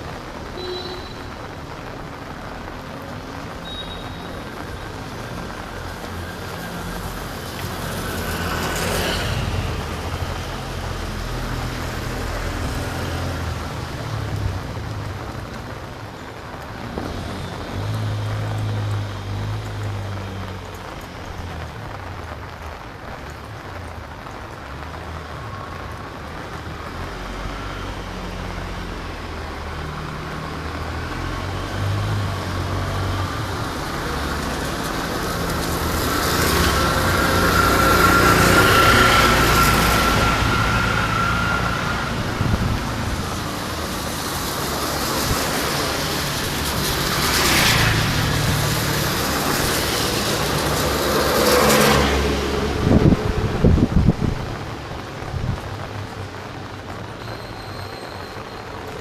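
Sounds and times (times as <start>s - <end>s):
traffic hum: 1.4s - 59.0s
vehicles passing: 1.4s - 59.0s.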